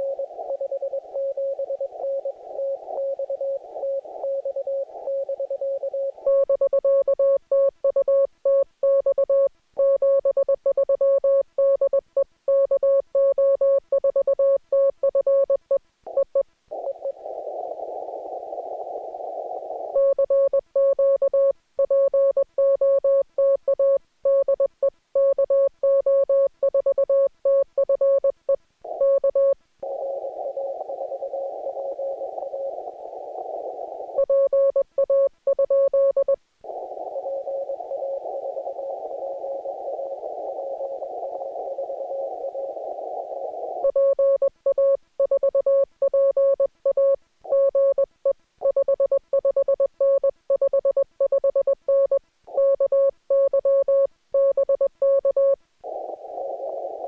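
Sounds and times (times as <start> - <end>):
radio band hiss: 55.8 - 57.0.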